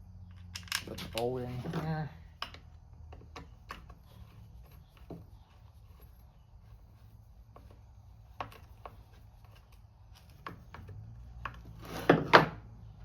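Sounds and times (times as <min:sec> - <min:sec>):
metal parts clicking and tapping: 0:00.3 - 0:06.3
harsh scraping: 0:04.0 - 0:12.4.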